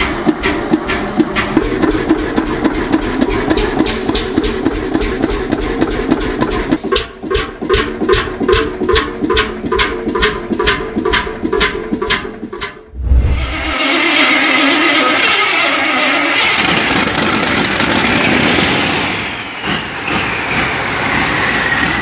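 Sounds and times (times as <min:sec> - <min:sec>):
engine thumping slowly: 0:00.0 - 0:13.8.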